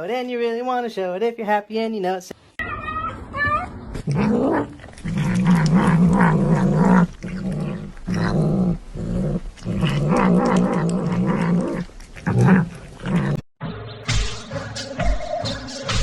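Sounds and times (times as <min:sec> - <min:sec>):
cat yowling: 0:02.6 - 0:03.8.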